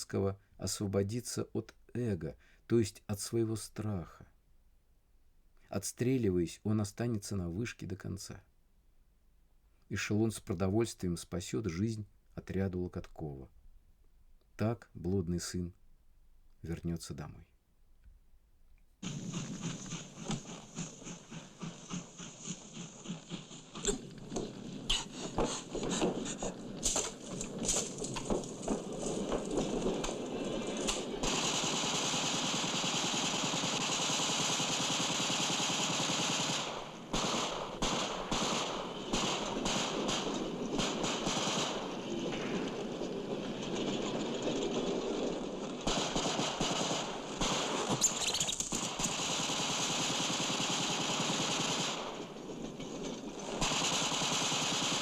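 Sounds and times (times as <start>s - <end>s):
machine-gun fire bursts: 19.0s - 52.4s, 53.4s - 55.0s.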